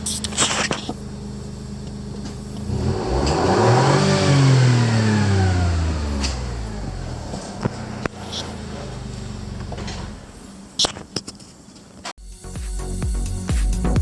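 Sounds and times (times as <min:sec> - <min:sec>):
car engine idling and revving: 0:00.0 - 0:10.8.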